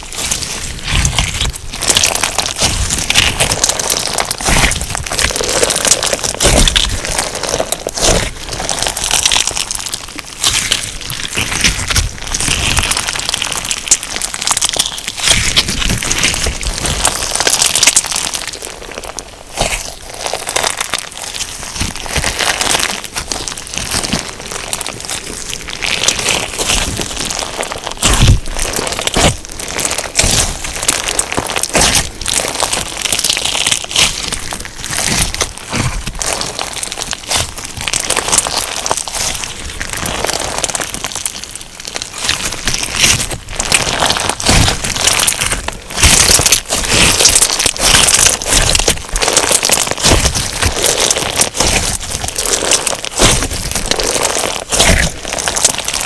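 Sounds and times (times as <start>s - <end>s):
crunchy crackling of slime beads: 0.0s - 56.0s.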